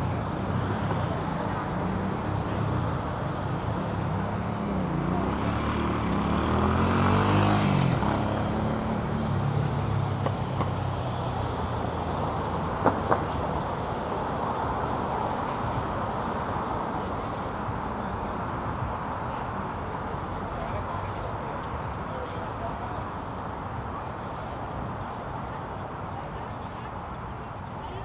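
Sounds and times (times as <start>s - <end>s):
street traffic noise: 0.0s - 28.0s.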